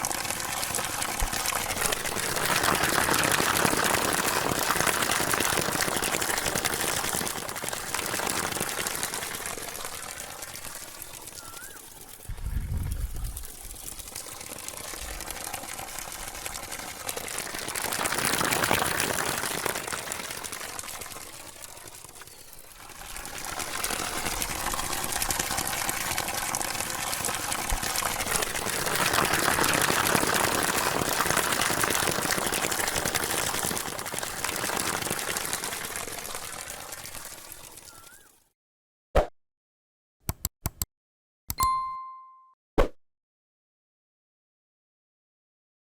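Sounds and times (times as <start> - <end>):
water fountain splashing: 0.0 - 12.4, 13.0 - 38.3.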